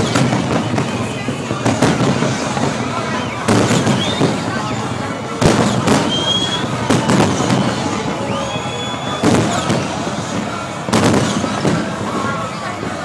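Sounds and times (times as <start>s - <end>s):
high firework whistles: 0.0s - 12.8s
fireworks crackling: 0.0s - 13.0s
firework shell bursts: 5.4s - 12.2s.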